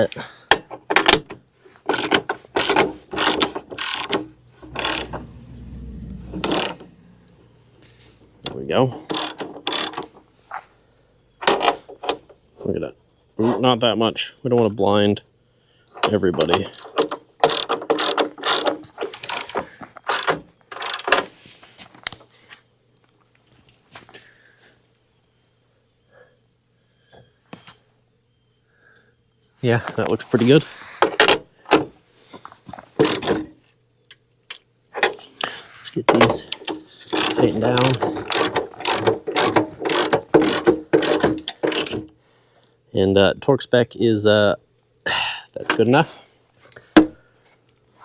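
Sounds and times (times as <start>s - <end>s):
ratchet wrench clicking: 1.9s - 5.6s, 6.4s - 6.9s, 9.1s - 10.1s, 17.4s - 19.5s, 20.1s - 21.1s, 33.0s - 33.3s, 37.1s - 42.0s
low steady hum: 3.0s - 9.1s.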